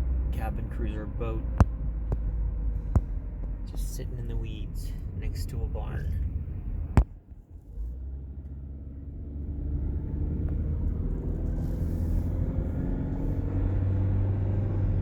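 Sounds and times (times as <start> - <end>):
car engine accelerating: 0.0 - 15.0
road rumble: 0.0 - 15.0.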